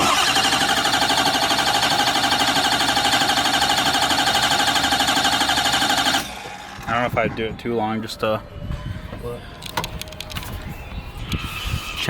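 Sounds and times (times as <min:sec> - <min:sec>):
diesel engine cranking without firing: 0:00.0 - 0:07.0.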